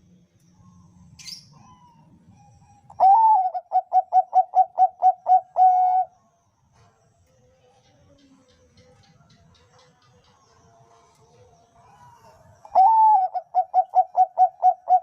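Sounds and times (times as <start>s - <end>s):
dove cooing: 0.6s - 6.2s, 11.8s - 15.0s.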